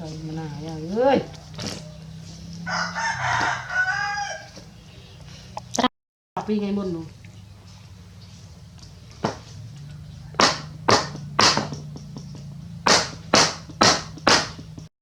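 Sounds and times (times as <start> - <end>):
sharp knocks: 9.2 - 9.6, 10.3 - 14.9.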